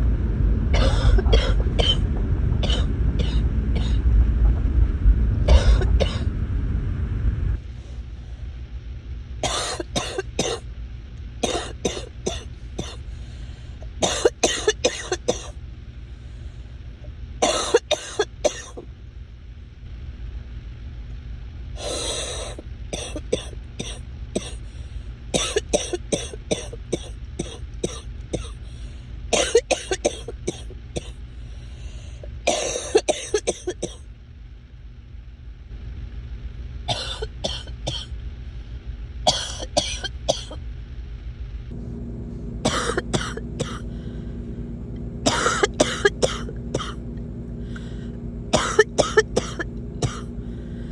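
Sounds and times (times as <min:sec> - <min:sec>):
person coughing: 0:00.8 - 0:02.0, 0:02.6 - 0:04.0, 0:05.5 - 0:06.3, 0:09.4 - 0:10.6, 0:11.4 - 0:13.0, 0:14.0 - 0:15.6, 0:17.4 - 0:18.8, 0:22.0 - 0:24.6, 0:25.4 - 0:28.6, 0:29.3 - 0:31.2, 0:32.5 - 0:34.0, 0:36.9 - 0:38.1, 0:39.3 - 0:40.6, 0:42.6 - 0:44.1, 0:45.3 - 0:47.0, 0:48.6 - 0:50.3.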